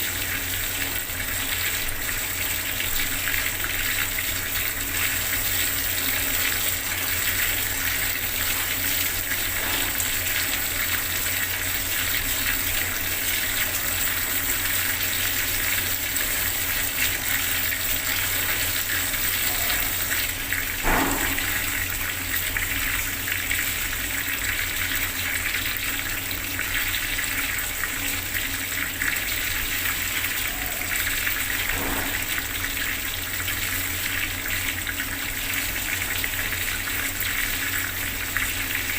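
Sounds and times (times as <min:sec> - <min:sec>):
water tap running: 0:00.0 - 0:38.9
water splash: 0:20.8 - 0:21.8, 0:31.7 - 0:32.5.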